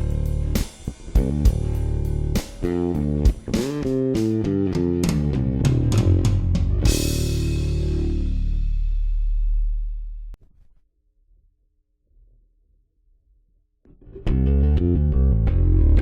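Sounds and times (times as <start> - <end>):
drum backing track: 0.0 - 9.1
electric bass riff: 0.0 - 10.3, 13.9 - 16.0.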